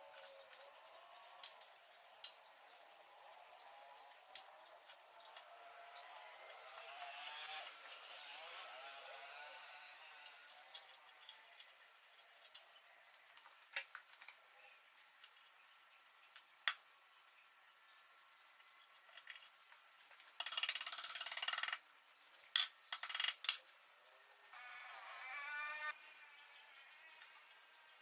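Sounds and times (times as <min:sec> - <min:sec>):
ratchet rattling: 0:20.4 - 0:21.8.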